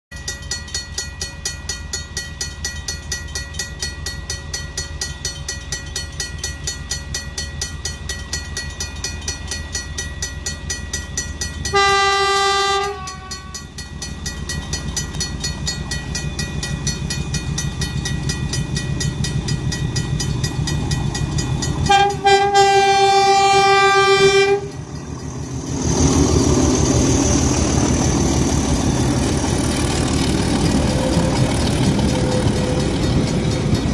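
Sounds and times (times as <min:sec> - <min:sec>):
diesel locomotive engine: 0:00.1 - 0:33.9
locomotive horn blasts: 0:11.7 - 0:13.7, 0:21.9 - 0:24.8.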